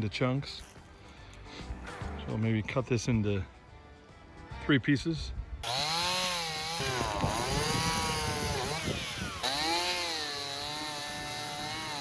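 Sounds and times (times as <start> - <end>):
chainsaw cutting through log: 5.6 - 12.0.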